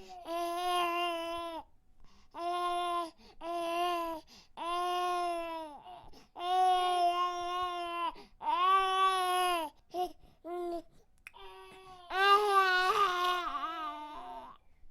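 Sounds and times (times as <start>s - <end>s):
baby crying: 2.4s - 10.8s, 11.4s - 14.6s.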